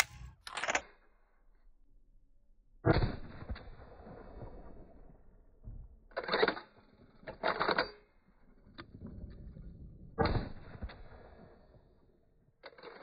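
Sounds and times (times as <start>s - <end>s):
shotgun action clacking: 0.0s - 0.8s.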